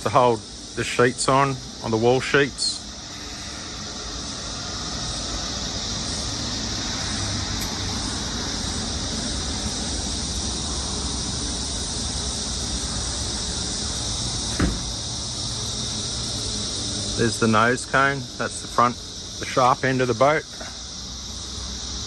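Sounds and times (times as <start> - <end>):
low background rumble: 0.0 - 19.4
high-pitched shrill hiss: 0.0 - 22.0.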